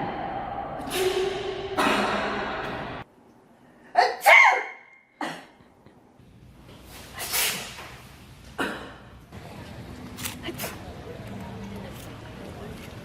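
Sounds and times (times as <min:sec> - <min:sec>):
person sneezing: 0:01.8 - 0:02.3.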